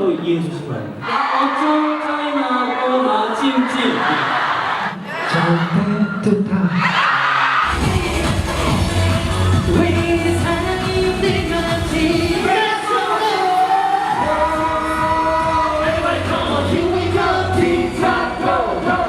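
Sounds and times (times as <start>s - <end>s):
backing track with bass beat: 7.6s - 12.6s, 14.0s - 19.0s
male group singing pop song: 7.6s - 19.0s.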